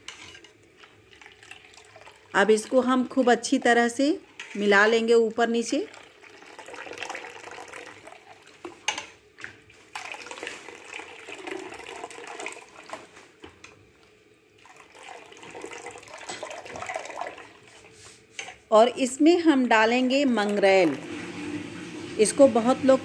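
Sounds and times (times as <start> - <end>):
batter sloshing as stirred: 0.0 - 5.1, 5.9 - 13.5, 14.6 - 19.0.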